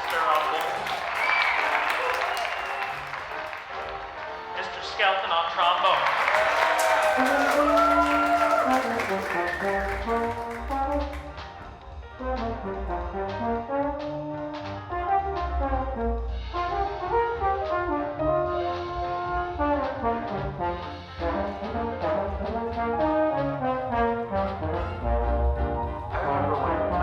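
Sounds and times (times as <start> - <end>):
backing track music: 0.0 - 27.0
trombone jazz blues solo: 12.1 - 27.0.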